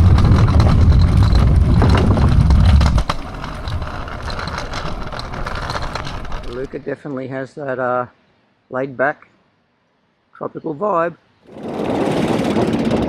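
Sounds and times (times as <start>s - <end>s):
wind buffeting microphone: 0.0s - 6.9s, 11.5s - 13.0s.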